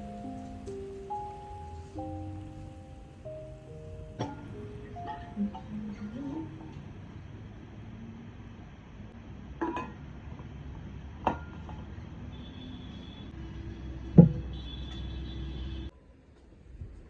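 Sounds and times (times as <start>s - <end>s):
low background hum: 0.0s - 11.9s.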